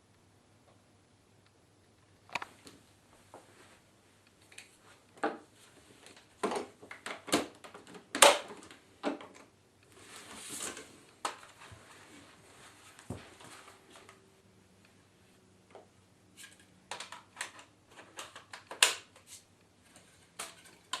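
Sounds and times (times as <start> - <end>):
plastic parts clicking and knocking: 6.0 - 9.5, 15.7 - 19.3, 19.9 - 21.0.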